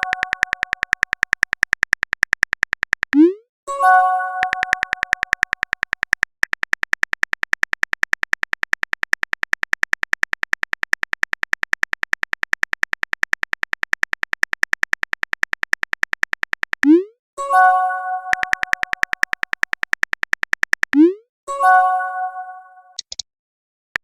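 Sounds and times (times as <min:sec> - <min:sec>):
fast electronic typing clicks: 0:00.0 - 0:03.4, 0:04.4 - 0:17.1, 0:18.3 - 0:21.2.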